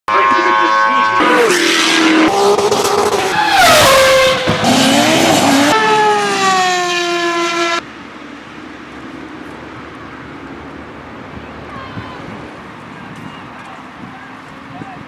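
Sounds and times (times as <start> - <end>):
racing car engines at high revs: 0.1 - 7.9.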